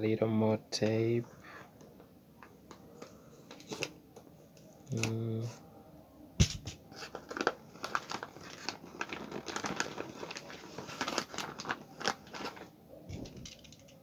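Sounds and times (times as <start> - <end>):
wrapping paper crinkling: 6.9 - 14.0.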